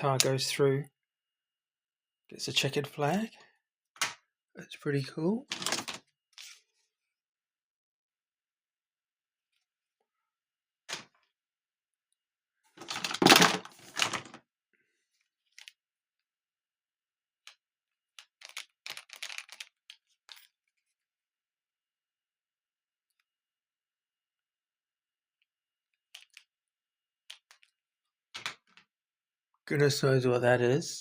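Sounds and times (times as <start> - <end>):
plastic track pieces clattering: 5.5 - 6.0, 12.8 - 14.4, 18.2 - 20.5.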